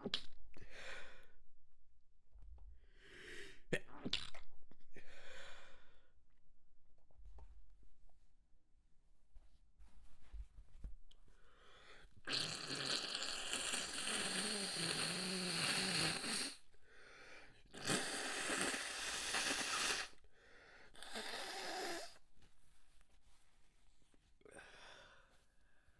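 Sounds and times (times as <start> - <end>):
person blowing nose: 12.3 - 16.7, 17.7 - 20.2.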